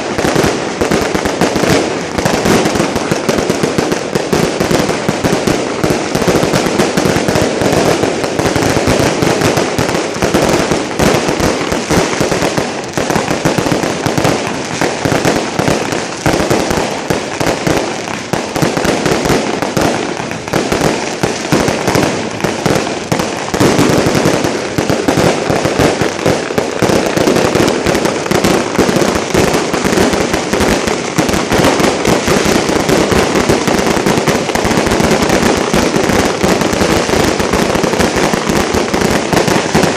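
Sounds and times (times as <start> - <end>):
fireworks rapid crackle of bangs: 0.0 - 39.9.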